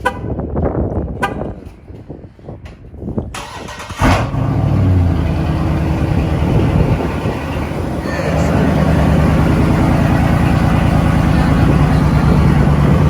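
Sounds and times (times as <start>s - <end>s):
car engine starting and idling: 3.4s - 13.0s.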